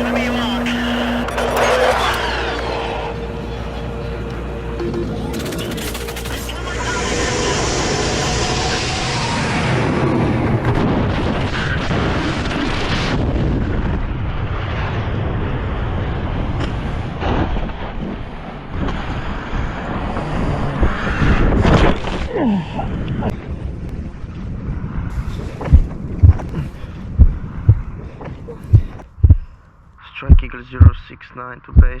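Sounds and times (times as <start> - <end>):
short falling whine: 0.0 - 10.3
deep rumbling roar: 6.6 - 17.7
thumps and gusts: 23.3 - 29.5, 30.3 - 31.0, 31.8 - 32.0.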